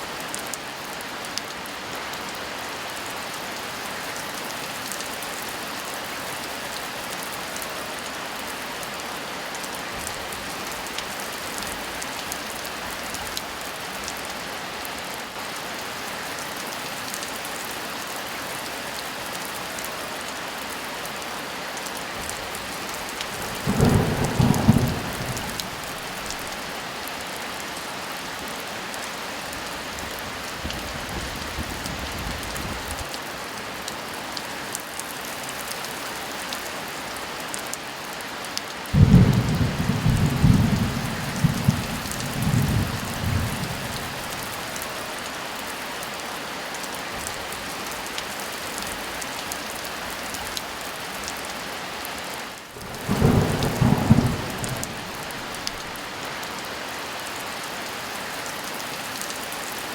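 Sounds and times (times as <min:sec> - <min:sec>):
heavy rain falling: 0:00.1 - 0:59.9
thunder rumble: 0:23.3 - 0:26.6, 0:39.0 - 0:44.5, 0:52.8 - 0:56.0.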